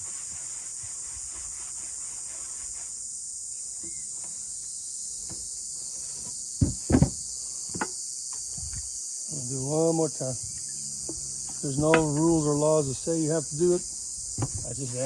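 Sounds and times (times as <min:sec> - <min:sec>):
insect chorus chirring: 0:00.0 - 0:15.0
dull knocks: 0:06.6 - 0:07.2, 0:11.8 - 0:12.3, 0:14.4 - 0:14.7.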